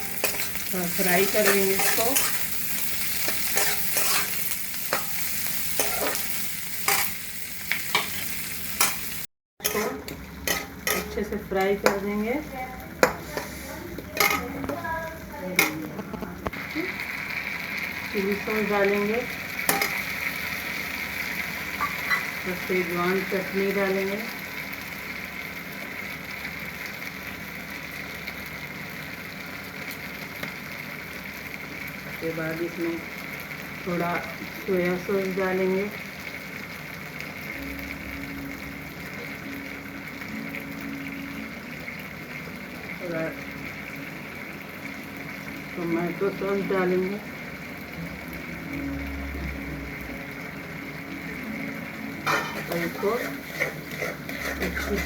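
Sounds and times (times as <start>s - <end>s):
utensil scraping a pan: 0.0s - 5.1s, 9.6s - 11.3s, 13.0s - 14.6s, 52.3s - 55.0s
food sizzling in hot oil: 0.0s - 55.0s.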